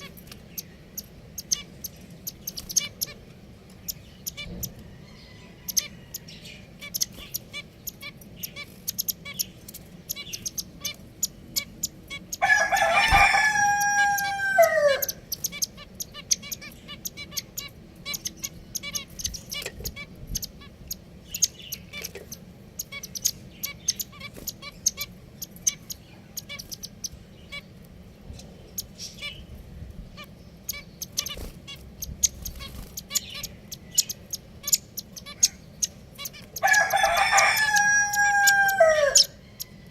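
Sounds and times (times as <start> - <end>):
finches chirping: 0.0 - 39.9
rooster crowing: 4.7 - 6.5, 12.4 - 15.2, 36.6 - 39.9.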